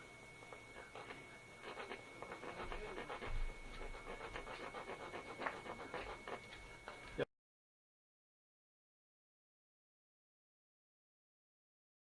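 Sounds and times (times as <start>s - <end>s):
chisel scraping wood: 1.6s - 6.4s.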